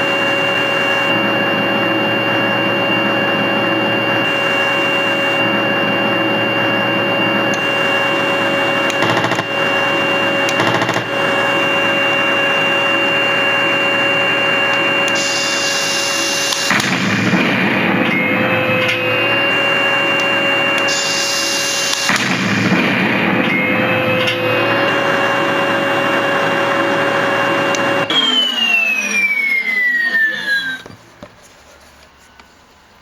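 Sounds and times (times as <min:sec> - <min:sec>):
rapid clicks: 0:08.9 - 0:09.9, 0:10.5 - 0:11.4.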